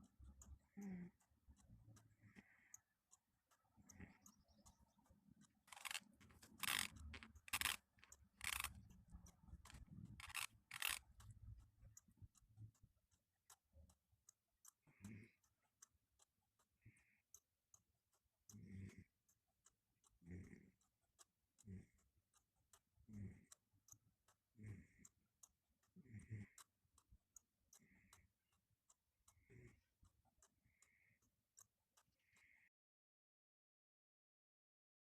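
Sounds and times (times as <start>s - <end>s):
faint ticking: 0.0s - 32.7s
teeth grinding: 5.7s - 11.4s.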